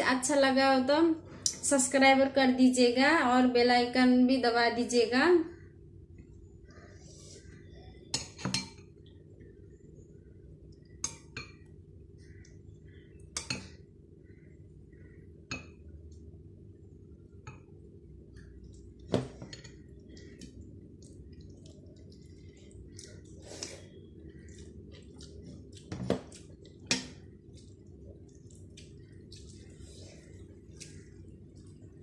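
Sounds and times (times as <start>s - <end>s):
steady low hum: 0.0s - 32.0s
dishes and cutlery clinking: 8.1s - 8.8s.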